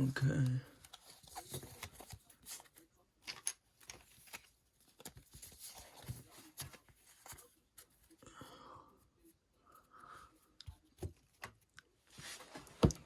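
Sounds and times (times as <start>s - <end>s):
trading cards being handled: 0.3s - 8.2s.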